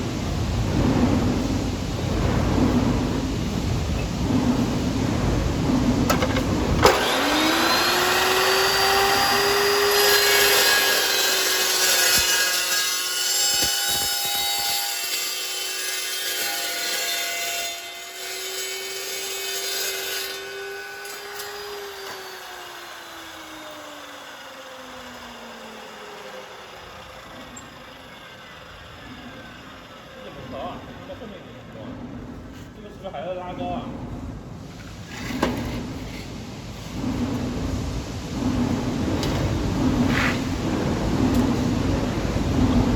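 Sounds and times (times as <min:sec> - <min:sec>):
circular saw motor whine: 0:06.1 - 0:15.5, 0:20.4 - 0:31.8
saw blade cutting steel: 0:06.1 - 0:30.7.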